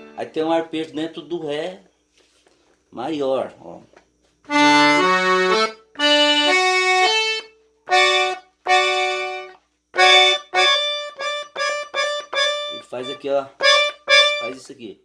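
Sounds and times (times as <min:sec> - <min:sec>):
accordion playing arpeggio: 0:00.0 - 0:00.3, 0:04.5 - 0:14.6.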